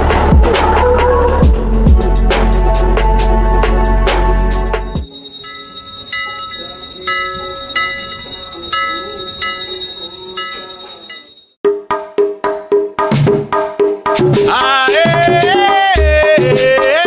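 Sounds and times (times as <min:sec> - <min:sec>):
bell-like chimes: 0:04.8 - 0:11.6
thin high ringing: 0:04.8 - 0:11.6.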